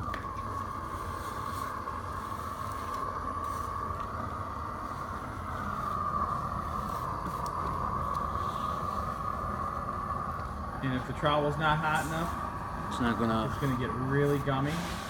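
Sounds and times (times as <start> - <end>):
roofing torch rushing: 0.0 - 15.0.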